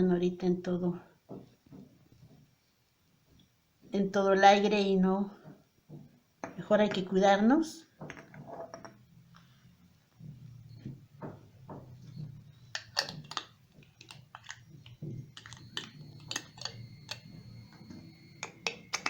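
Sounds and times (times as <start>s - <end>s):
faint low hum: 0.0s - 19.0s
jar clicking and clinking: 12.7s - 17.3s, 18.4s - 19.0s.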